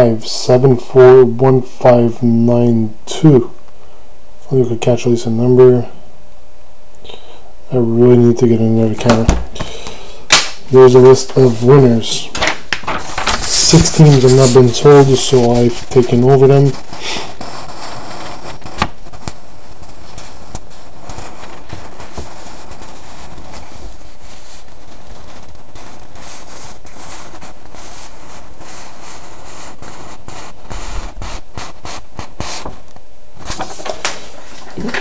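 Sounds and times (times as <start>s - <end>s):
steady hiss: 0.0s - 35.0s
scratching and scraping handling: 11.0s - 29.0s, 33.4s - 35.0s.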